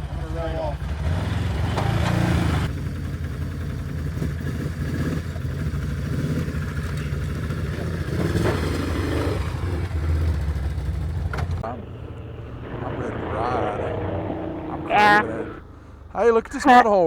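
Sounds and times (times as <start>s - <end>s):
off-road vehicle engine low revs: 0.0s - 16.2s.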